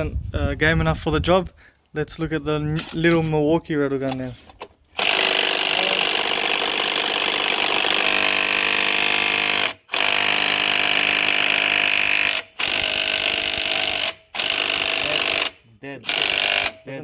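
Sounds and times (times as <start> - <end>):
impact wrench hammering: 5.0 - 16.8.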